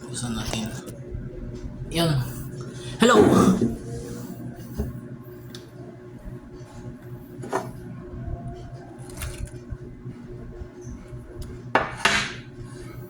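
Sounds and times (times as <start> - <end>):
faint steady hum: 0.0 - 13.0
dishes knocking: 11.8 - 12.5.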